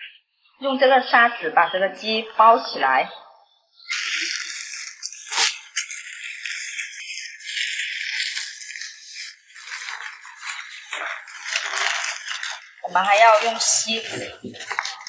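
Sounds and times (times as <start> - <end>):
aluminium foil crinkling: 3.9 - 15.0.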